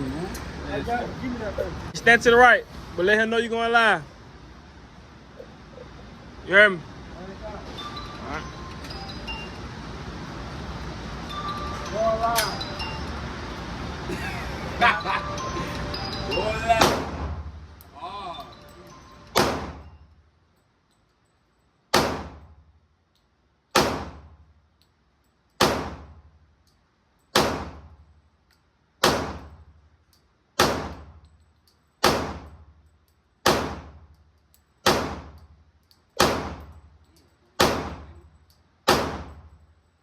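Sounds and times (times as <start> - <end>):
pistol shots: 19.4 - 19.8, 21.9 - 22.5, 23.7 - 24.3, 25.6 - 26.1, 27.3 - 27.9, 29.0 - 29.6, 30.6 - 31.1, 32.0 - 32.6, 33.4 - 34.0, 34.8 - 35.4, 36.2 - 36.8, 37.6 - 38.1, 38.9 - 39.4.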